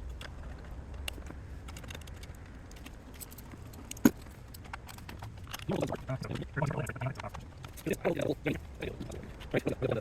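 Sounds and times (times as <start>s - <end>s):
light clicks and clinks: 0.0s - 6.5s
low steady hum: 0.0s - 10.0s.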